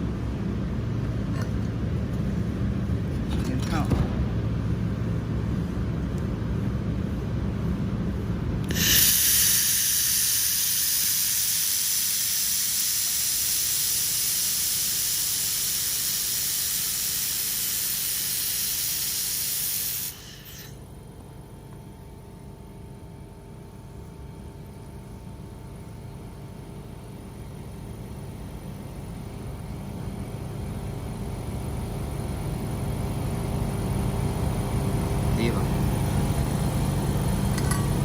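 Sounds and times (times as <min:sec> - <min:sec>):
low machine rumble: 0:00.0 - 0:11.4
shielding gas hissing: 0:08.7 - 0:20.9.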